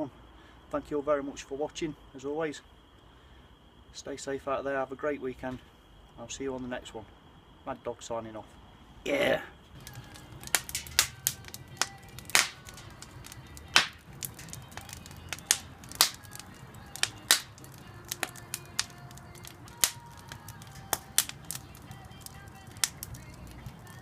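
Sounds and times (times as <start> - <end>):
wood fire crackling: 9.1 - 24.0
low steady rumble: 9.8 - 24.0.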